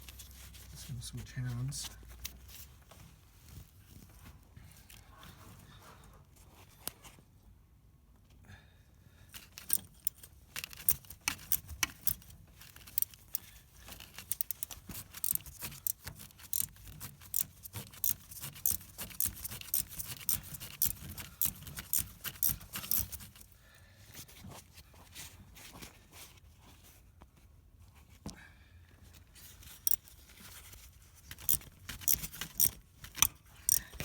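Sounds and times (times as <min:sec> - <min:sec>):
ratchet wrench clicking: 0:09.5 - 0:23.4, 0:31.3 - 0:34.0.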